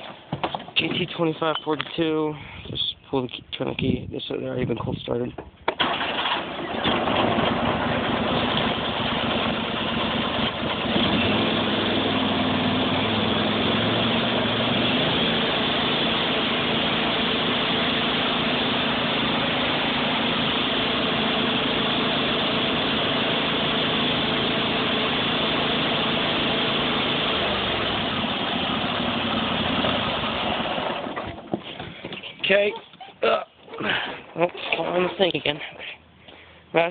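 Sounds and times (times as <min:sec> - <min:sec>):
garden tractor engine running: 0:05.8 - 0:31.6.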